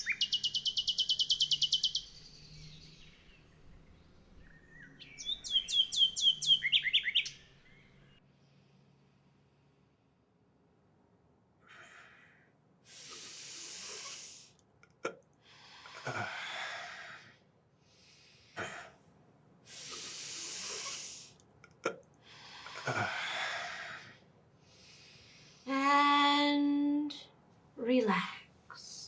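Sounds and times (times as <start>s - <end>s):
person breathing deeply: 11.7s - 14.6s, 15.4s - 18.6s, 19.7s - 21.4s, 22.2s - 25.7s.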